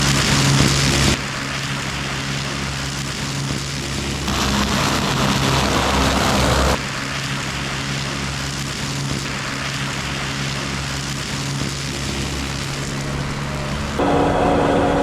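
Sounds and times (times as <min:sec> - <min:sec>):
machine engine hum: 0:04.1 - 0:06.8, 0:11.8 - 0:15.0.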